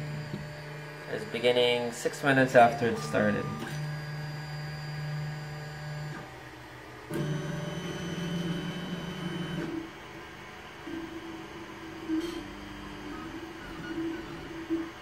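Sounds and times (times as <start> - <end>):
stepper motors whining: 0.0 - 6.3.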